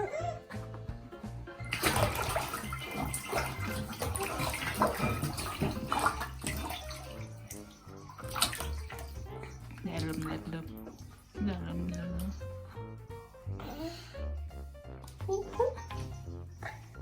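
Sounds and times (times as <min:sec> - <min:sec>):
bathtub water sloshing and splashing: 0:00.0 - 0:13.8, 0:14.6 - 0:17.0
background music: 0:00.0 - 0:17.0.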